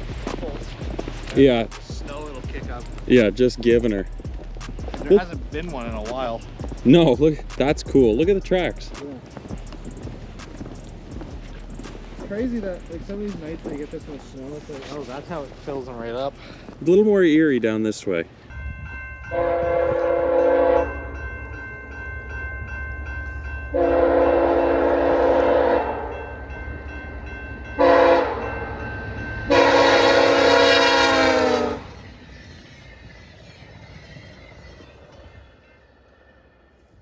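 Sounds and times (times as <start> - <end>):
train rumble: 0.0 - 37.0
train horn blasts: 19.3 - 21.2, 23.7 - 26.3, 27.8 - 32.0.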